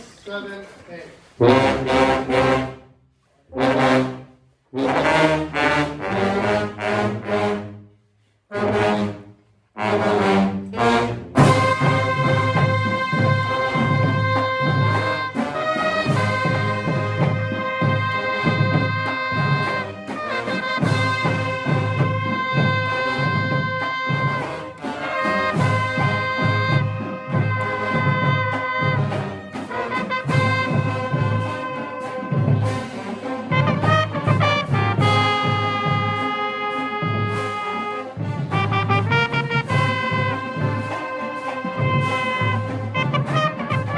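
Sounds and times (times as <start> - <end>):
brass instrument notes: 0.0 - 43.9
steady low beat: 30.0 - 43.9.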